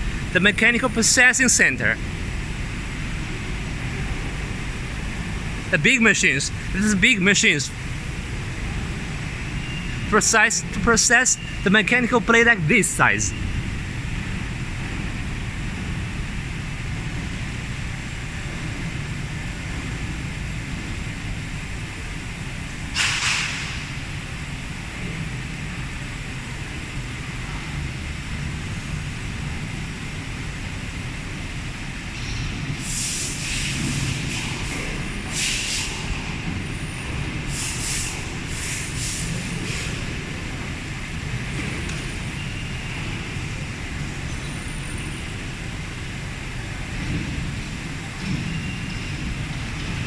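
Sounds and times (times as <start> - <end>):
machine shop rumble: 0.0 - 50.0
short hissing bursts: 32.8 - 36.1, 37.5 - 40.0.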